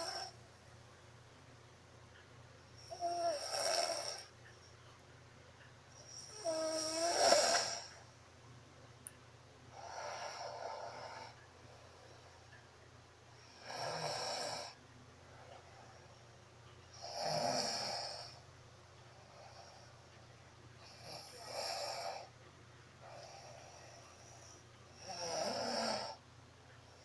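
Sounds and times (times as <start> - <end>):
woman snoring: 0.0 - 0.4, 2.8 - 4.3, 6.1 - 8.0, 9.7 - 11.4, 13.4 - 14.8, 17.0 - 18.4, 20.8 - 22.3, 23.0 - 26.2.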